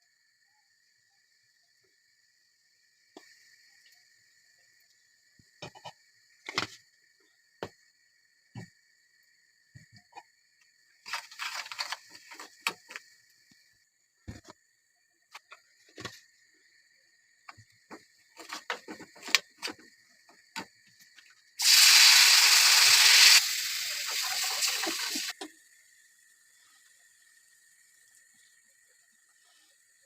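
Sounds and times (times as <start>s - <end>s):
kitchen tap running: 21.6s - 25.4s.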